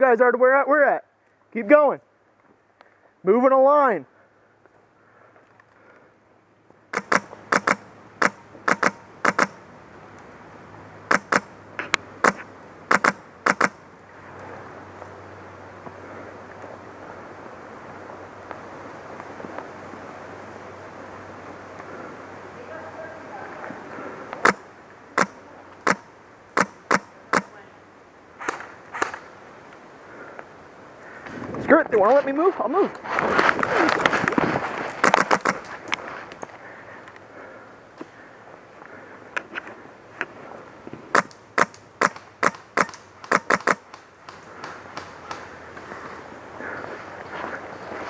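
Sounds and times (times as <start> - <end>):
airsoft gun firing single shots: 6.9 - 9.6, 11.1 - 11.5, 12.2 - 13.8, 25.2 - 27.6, 35.0 - 35.6, 41.1 - 45.4.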